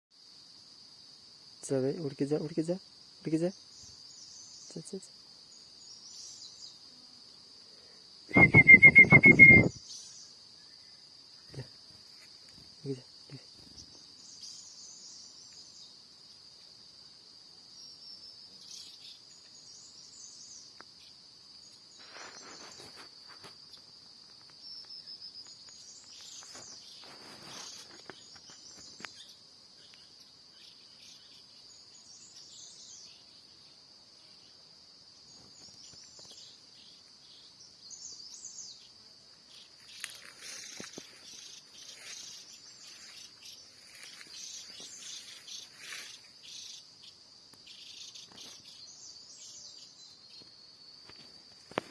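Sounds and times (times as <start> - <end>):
high bird chirps: 8.3 - 10.2
high-pitched insect drone: 8.3 - 14.7.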